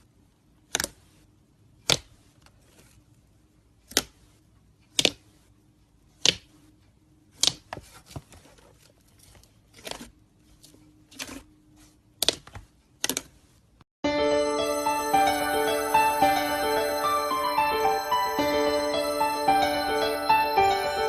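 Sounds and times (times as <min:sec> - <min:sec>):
music: 0:14.0 - 0:21.0.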